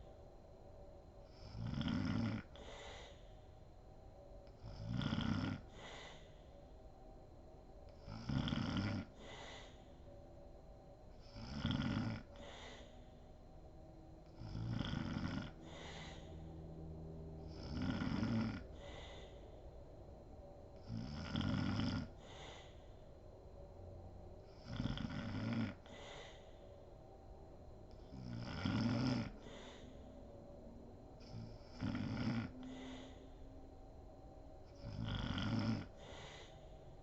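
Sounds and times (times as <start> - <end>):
woman snoring: 1.3 - 3.3, 4.6 - 6.4, 8.0 - 10.0, 11.2 - 13.2, 14.2 - 16.5, 17.4 - 19.6, 20.8 - 22.9, 24.5 - 26.7, 27.9 - 30.2, 31.2 - 33.4, 34.8 - 36.8
soft breath: 2.5 - 4.7, 5.6 - 8.0, 9.0 - 11.3, 12.2 - 14.4, 15.5 - 17.5, 18.6 - 20.9, 22.0 - 24.6, 25.7 - 28.2, 29.3 - 31.8, 32.5 - 34.9, 35.8 - 37.0.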